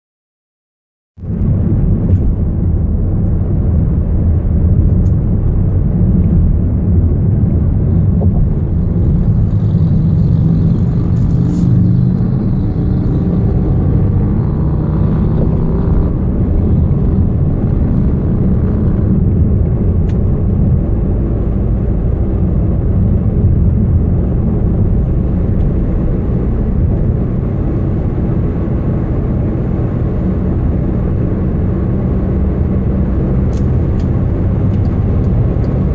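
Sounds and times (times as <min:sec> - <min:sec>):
car low rumble: 0:01.2 - 0:35.9.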